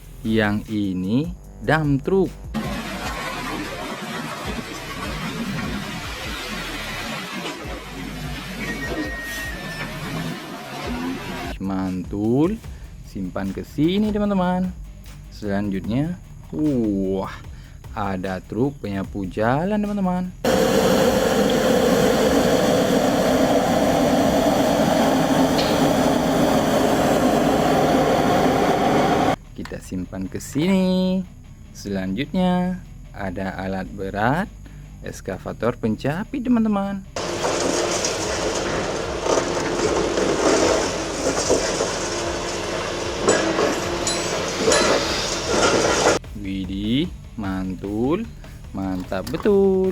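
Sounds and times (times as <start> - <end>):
truck engine drone: 20.4 - 29.4, 37.2 - 46.2.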